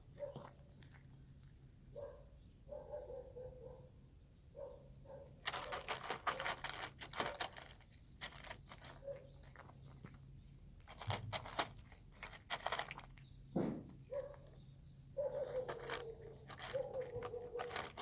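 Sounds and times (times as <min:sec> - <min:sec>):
cat crunching food: 0:00.1 - 0:01.7, 0:05.4 - 0:13.3, 0:15.4 - 0:18.0.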